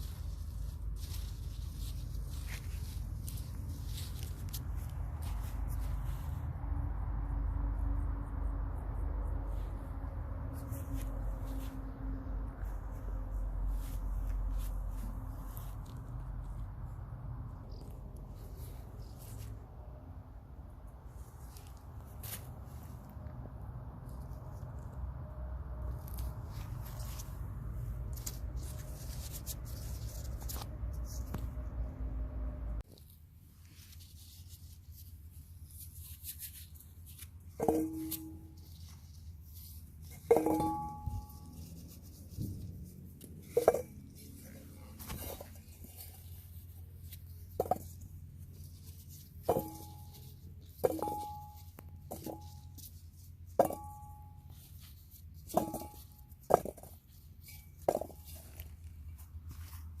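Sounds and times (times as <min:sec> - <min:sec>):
faint rustling: 0:00.0 - 0:06.6
low steady hum: 0:00.0 - 1:00.0.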